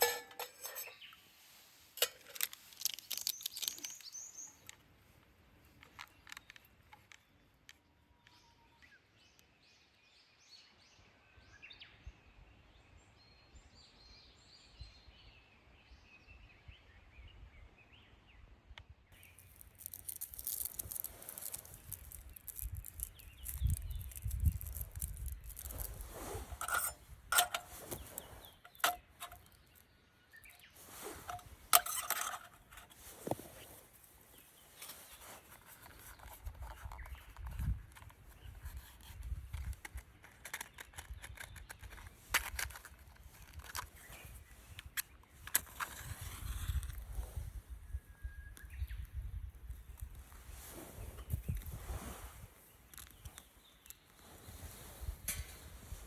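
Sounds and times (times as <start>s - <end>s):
gear rustling with clicks and knocks: 0.0s - 7.8s, 19.2s - 29.9s, 30.6s - 47.2s.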